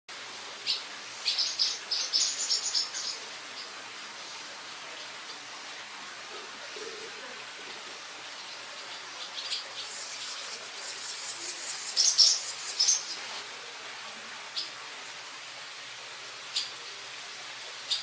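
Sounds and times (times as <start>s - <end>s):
background hiss: 0.1s - 18.0s
baby birds chirping: 0.7s - 3.2s, 9.2s - 13.3s.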